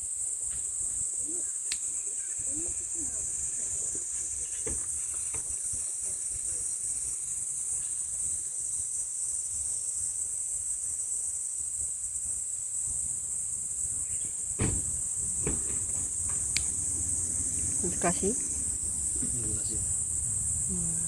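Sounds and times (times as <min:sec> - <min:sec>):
insects chirring: 0:00.0 - 0:21.0
sharp knocks: 0:14.6 - 0:16.7.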